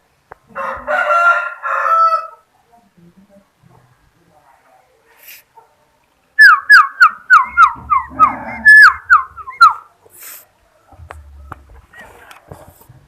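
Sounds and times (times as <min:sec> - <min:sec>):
bird whistling downward notes: 0:06.4 - 0:09.8.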